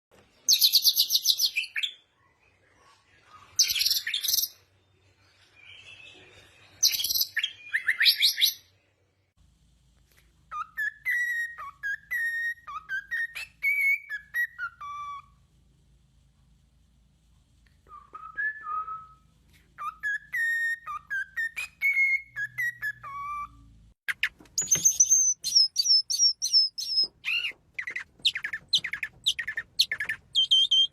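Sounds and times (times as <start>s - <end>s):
small birds trilling: 24.1s - 30.9s.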